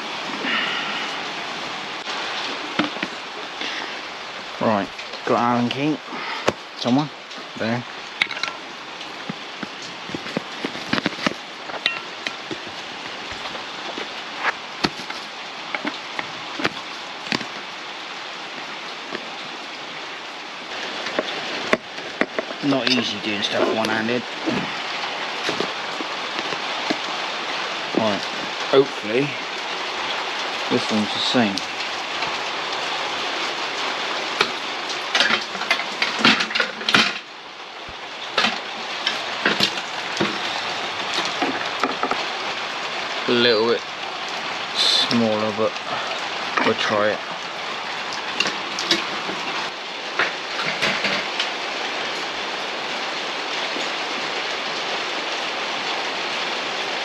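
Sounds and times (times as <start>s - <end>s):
steady hiss: 0.0s - 54.8s
metal parts and tools clinking: 8.2s - 8.7s, 10.2s - 12.7s.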